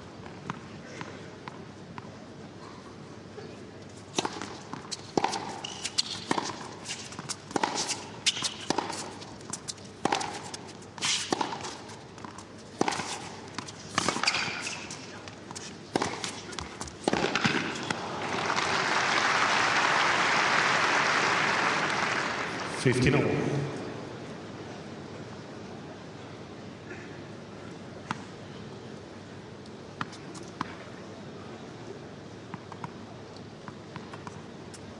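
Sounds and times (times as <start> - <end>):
tennis ball struck by rackets: 4.2 - 10.6, 11.2 - 14.9, 15.9 - 18.7
crowd applause: 18.0 - 22.8.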